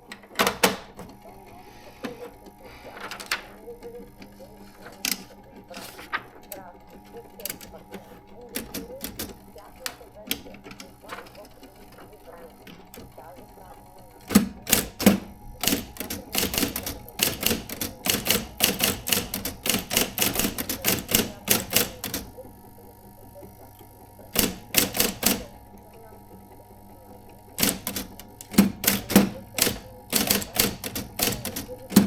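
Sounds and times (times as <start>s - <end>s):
faint steady hum: 0.0s - 32.0s
typewriter key strikes: 0.1s - 1.2s, 8.5s - 13.3s, 14.2s - 22.3s, 24.3s - 25.5s, 27.6s - 32.0s.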